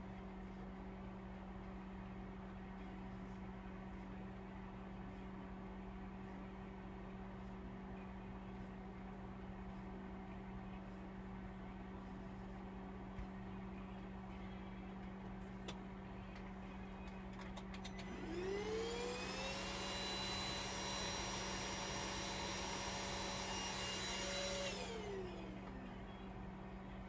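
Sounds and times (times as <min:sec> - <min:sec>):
small electric motor whine: 0:17.9 - 0:26.0.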